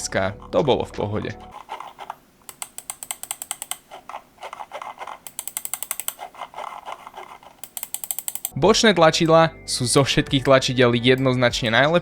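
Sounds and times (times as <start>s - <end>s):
mouse scroll wheel ticking: 1.5s - 8.6s.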